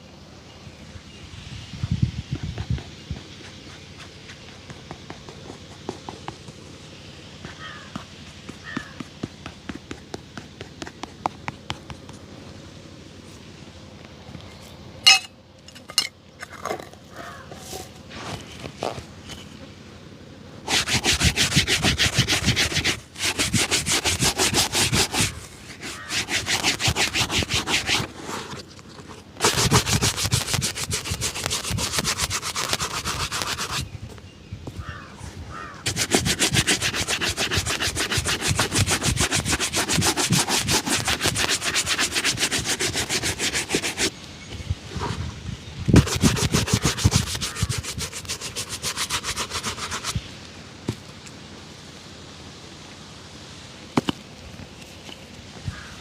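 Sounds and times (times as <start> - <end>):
buffing strokes on leather shoe: 2.3 - 12.4, 20.6 - 33.9, 35.8 - 44.1, 45.9 - 50.3.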